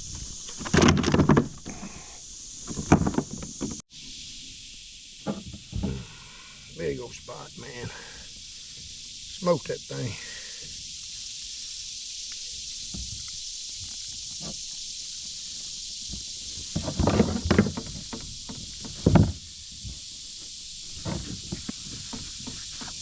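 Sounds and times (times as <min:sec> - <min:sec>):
knocks and rustles: 0:00.0 - 0:01.9, 0:02.6 - 0:03.8, 0:05.2 - 0:06.1, 0:12.7 - 0:23.0
insects buzzing: 0:00.0 - 0:23.0.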